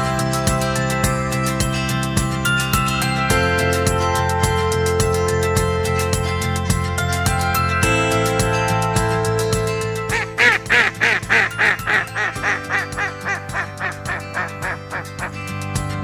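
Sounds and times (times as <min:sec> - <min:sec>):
soft instrumental music: 0:00.0 - 0:16.0
bird calling harsh notes: 0:10.1 - 0:15.5.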